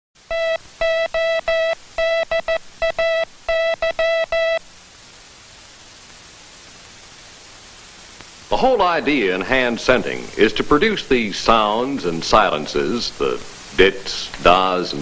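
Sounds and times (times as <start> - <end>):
steady hiss: 0.2 - 15.0
morse code tone: 0.3 - 4.6.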